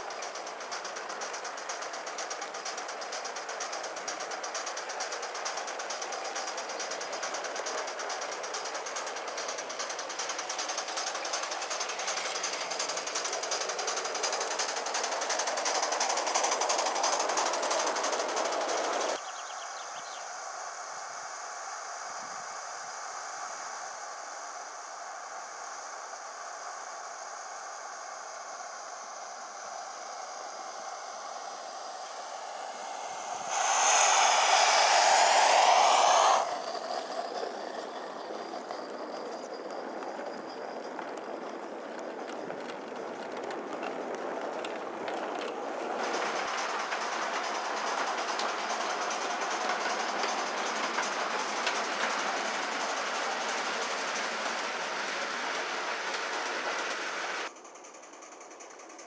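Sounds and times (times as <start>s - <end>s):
wheels clattering over track: 0.0s - 19.2s, 31.9s - 59.0s
model steam locomotive exhaust: 0.0s - 59.0s
loud steam burst: 29.7s - 38.2s.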